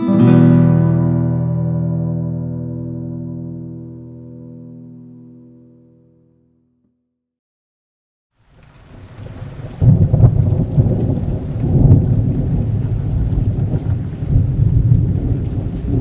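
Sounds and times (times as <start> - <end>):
rain hissing: 8.4 - 16.0
thunder crack and rumble: 8.8 - 16.0.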